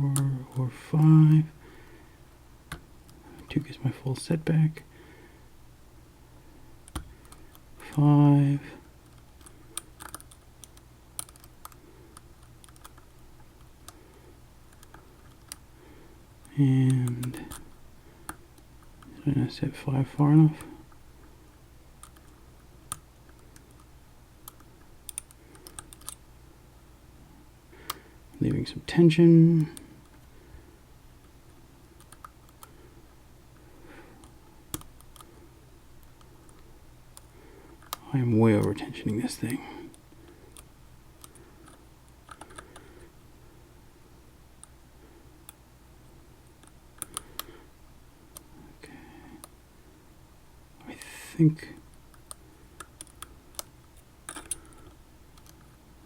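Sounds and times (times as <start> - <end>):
lock pick clicking on lock pins: 54.3 - 55.6.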